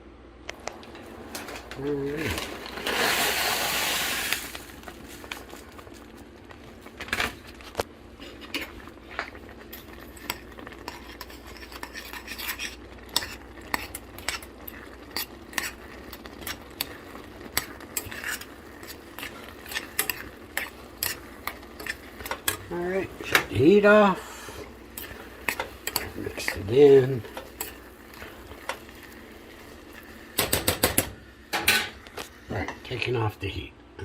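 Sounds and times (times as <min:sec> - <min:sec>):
spoon clinking and scraping pot: 0:08.3 - 0:23.9, 0:24.6 - 0:32.0.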